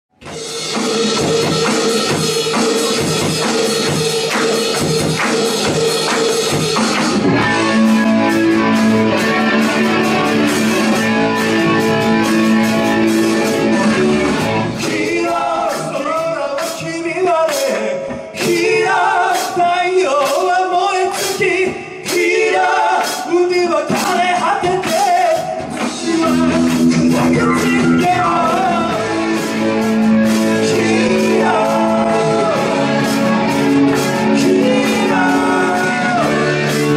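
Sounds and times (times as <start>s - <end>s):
held guitar chords: 0.1s - 16.4s, 24.8s - 36.9s
drums: 0.1s - 36.9s
live rock band playing: 0.1s - 36.9s.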